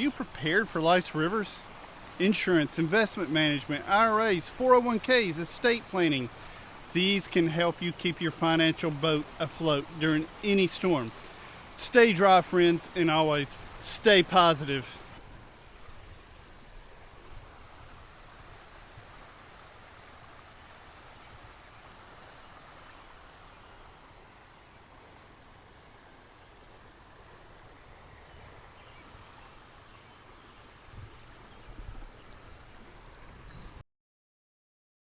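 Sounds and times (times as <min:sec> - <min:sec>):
floodwater rushing: 0:00.0 - 0:33.8.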